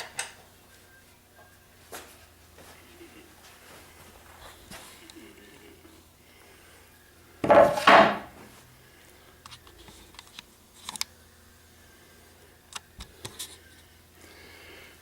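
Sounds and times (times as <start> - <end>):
wooden boards knocking: 7.4 - 8.4.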